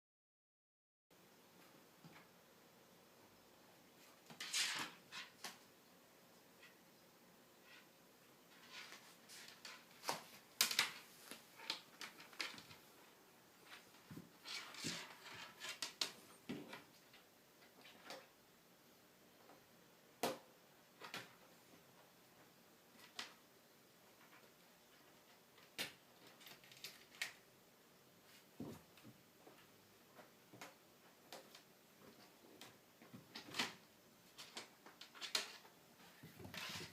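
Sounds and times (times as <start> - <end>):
kitten tapping and scuffling: 8.5 - 12.9, 13.6 - 18.2, 28.6 - 36.9.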